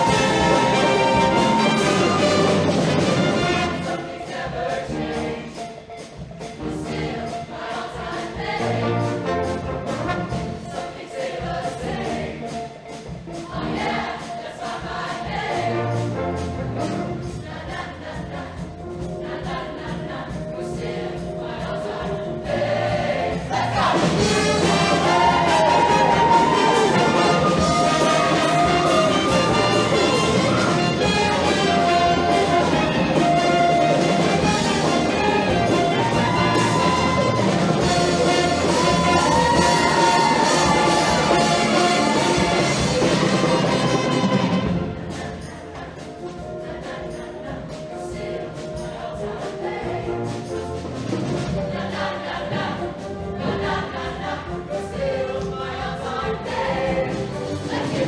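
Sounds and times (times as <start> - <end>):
brass: 0.0 - 5.7, 6.6 - 12.6, 13.4 - 58.0
choir singing with band: 0.0 - 58.0
fast ticking beat: 17.3 - 50.8.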